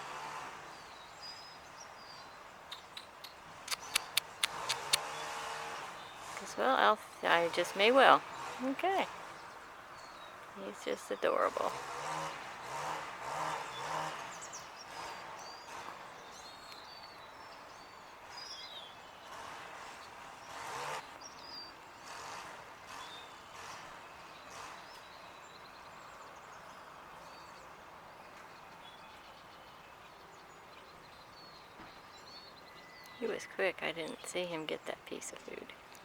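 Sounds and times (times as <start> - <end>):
outdoor background noise: 0.0 - 36.0
bird chirps and calls: 1.3 - 11.8.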